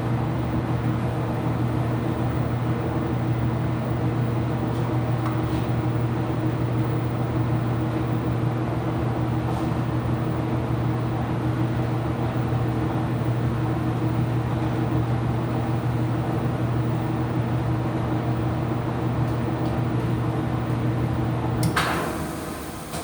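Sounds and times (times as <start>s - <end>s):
washing machine motor hum: 10.5s - 23.0s.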